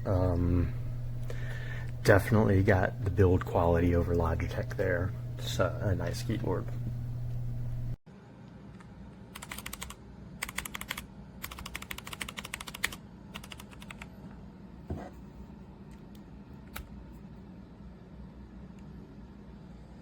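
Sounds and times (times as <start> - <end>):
mechanical keyboard key clacks: 9.4 - 14.1.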